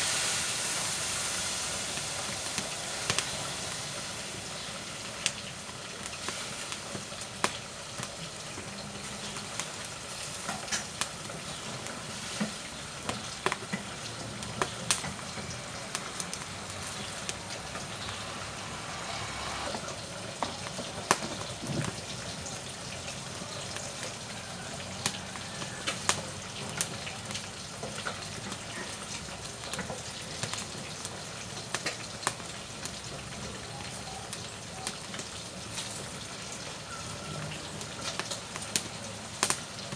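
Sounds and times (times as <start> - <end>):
firewood hissing: 0.0 - 8.2, 9.3 - 25.9
fire crackling and popping: 0.0 - 33.7, 37.8 - 39.9.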